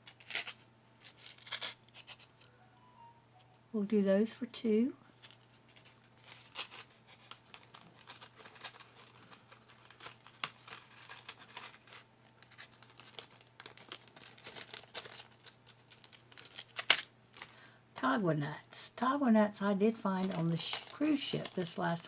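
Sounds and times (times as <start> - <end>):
jewellery crinkling and clicking: 0.0 - 2.5, 5.2 - 17.6, 20.0 - 22.0.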